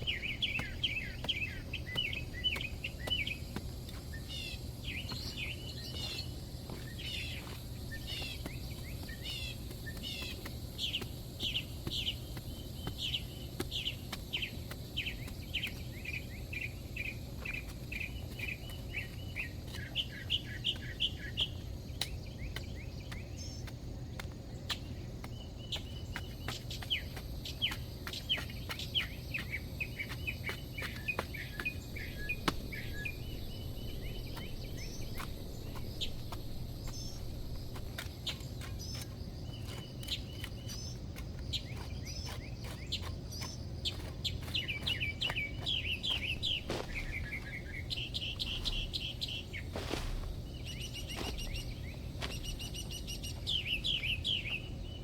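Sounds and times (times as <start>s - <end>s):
songbirds chirping and twittering: 0.0s - 55.0s
steady low rumble: 31.6s - 39.5s, 44.9s - 55.0s.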